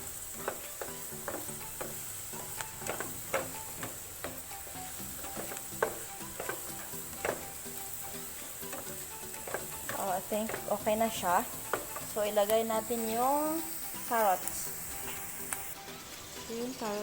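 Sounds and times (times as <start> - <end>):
food sizzling in a pan: 0.0 - 17.0
spatula scraping and knocking pan: 0.1 - 13.4.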